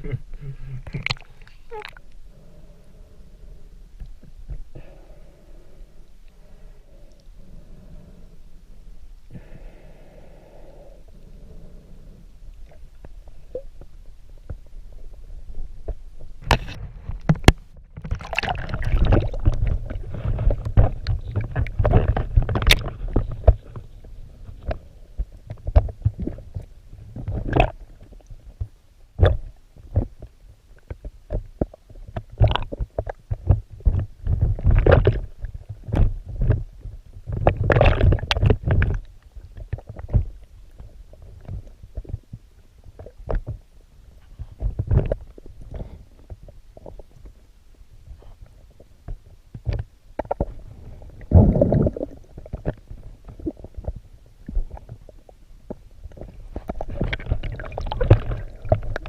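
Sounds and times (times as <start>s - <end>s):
knocks and gurgles: 0.0s - 2.0s, 15.7s - 43.6s, 44.4s - 47.4s, 49.0s - 59.0s
water sloshing and splashing: 0.9s - 2.2s, 16.4s - 28.3s, 37.3s - 42.2s, 56.0s - 59.0s.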